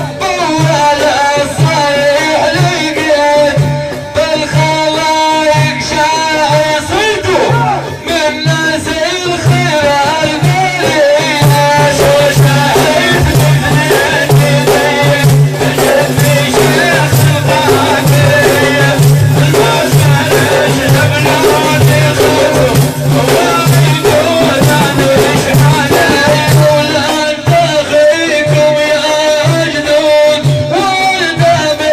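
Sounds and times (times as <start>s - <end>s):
frame drums with jingles: 0.0s - 31.9s
man singing: 0.0s - 31.9s.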